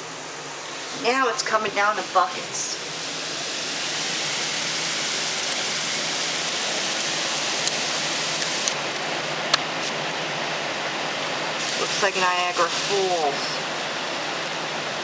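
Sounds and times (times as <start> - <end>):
torrential rain pouring: 1.8 - 9.4, 11.0 - 15.0.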